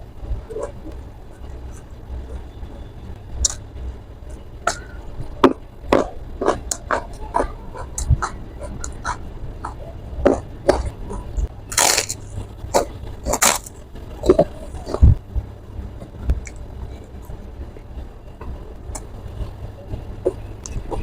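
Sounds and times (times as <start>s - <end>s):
mouth smacks and clicks: 4.6s - 12.1s
person chewing with crunches: 4.6s - 15.2s.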